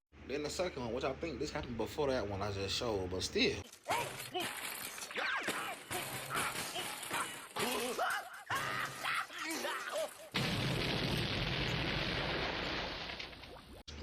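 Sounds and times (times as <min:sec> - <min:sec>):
cartoon character voices: 0:03.8 - 0:10.3
cartoon explosion rushing blast: 0:10.3 - 0:13.2.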